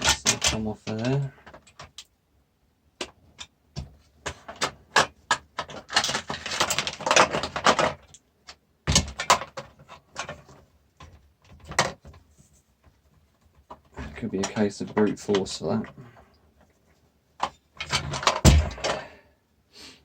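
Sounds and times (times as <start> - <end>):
mixer parts clicking and rattling: 0.0 - 2.1, 3.0 - 16.8, 17.4 - 19.1.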